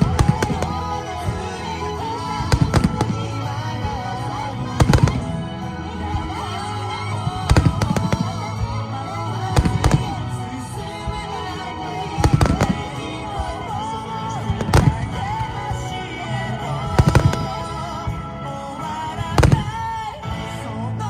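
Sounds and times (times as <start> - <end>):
fireworks cracking and booming: 0.0 - 13.7, 14.5 - 15.6, 16.8 - 17.8, 19.4 - 19.9
music with wavering melody: 0.0 - 21.0.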